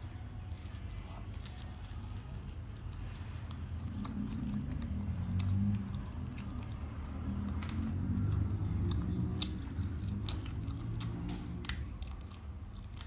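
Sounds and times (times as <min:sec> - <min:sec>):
person chewing food: 0:00.0 - 0:13.0.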